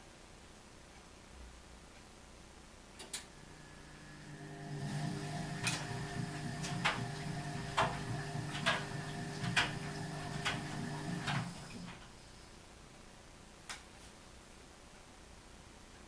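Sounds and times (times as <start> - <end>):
washing machine motor hum: 3.3 - 12.2
washing machine clicking: 4.1 - 12.1.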